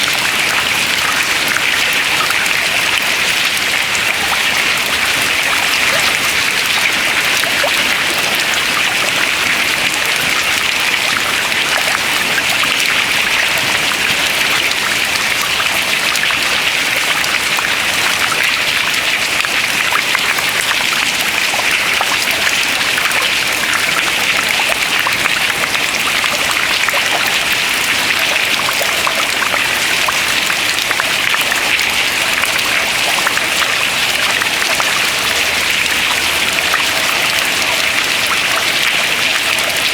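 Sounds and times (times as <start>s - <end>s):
continuous watery hiss: 0.0s - 39.9s
water dripping into river: 0.0s - 39.9s.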